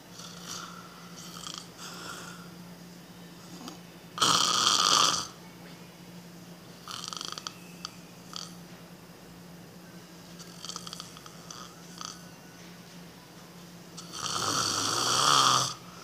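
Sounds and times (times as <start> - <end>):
loud rasping snore: 0.1 - 2.4, 4.2 - 5.4, 6.8 - 7.6, 10.4 - 12.2, 14.0 - 15.8
soft fluttering snores: 0.1 - 2.5, 6.8 - 7.6, 10.4 - 12.2, 14.0 - 15.8.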